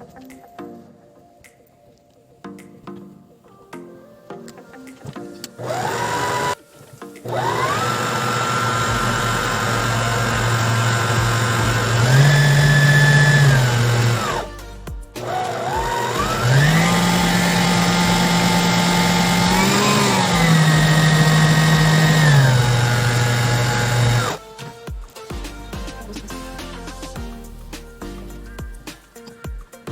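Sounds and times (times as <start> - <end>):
stand mixer motor whining: 5.6 - 6.6, 7.3 - 14.4, 15.2 - 24.4.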